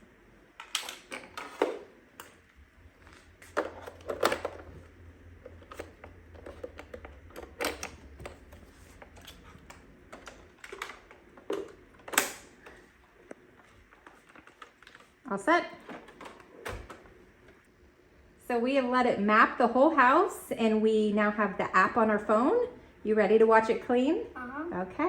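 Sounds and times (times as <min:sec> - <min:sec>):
plastic clicks and rattles: 0:09.0 - 0:12.8.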